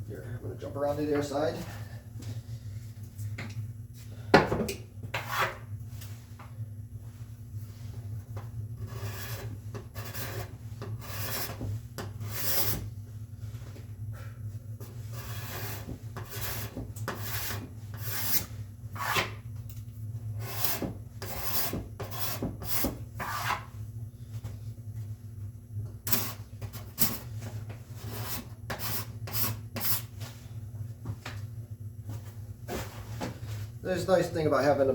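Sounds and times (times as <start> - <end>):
low steady hum: 0.0 - 34.9
card scraper scraping wood: 8.8 - 11.6, 20.4 - 23.7.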